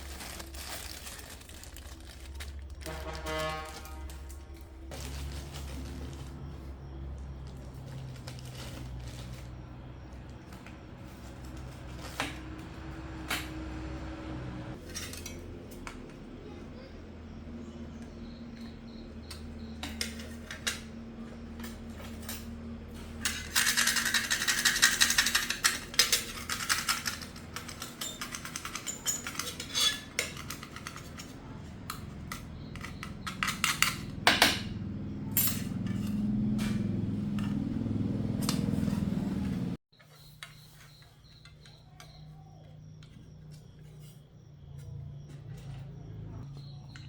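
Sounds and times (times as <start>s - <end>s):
metal parts clinking: 14.8s - 15.8s, 19.3s - 21.0s, 21.6s - 34.7s, 35.3s - 37.6s.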